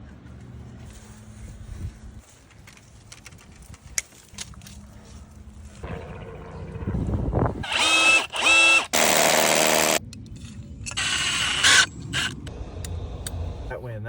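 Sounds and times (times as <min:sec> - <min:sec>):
small electric power tool whirring: 0:07.6 - 0:10.0, 0:10.9 - 0:12.4.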